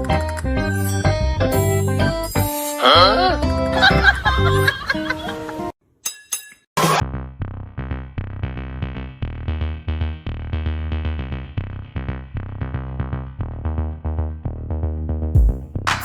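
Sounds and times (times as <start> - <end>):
drum machine beat: 15.4 - 16.0.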